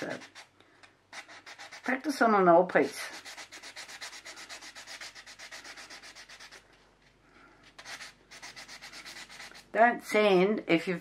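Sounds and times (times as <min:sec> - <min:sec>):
wet sandpaper rubbing strokes: 0:00.0 - 0:00.5, 0:01.1 - 0:02.0, 0:02.9 - 0:06.6, 0:07.8 - 0:09.7.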